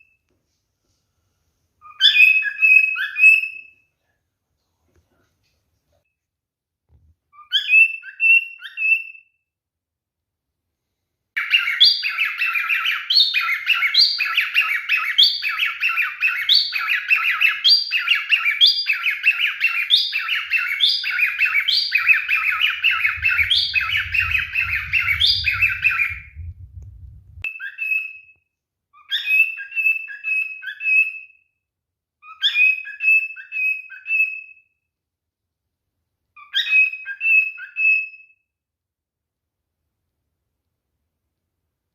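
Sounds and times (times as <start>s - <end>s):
cockatiel whistling: 1.8s - 3.8s, 7.3s - 9.3s, 11.4s - 26.4s, 27.5s - 28.3s, 29.0s - 31.4s, 32.2s - 34.6s, 36.4s - 38.3s
harsh bird chirps: 1.8s - 3.9s, 7.4s - 9.4s, 11.4s - 28.4s, 29.0s - 31.5s, 32.2s - 34.7s
low rumble: 22.3s - 27.5s.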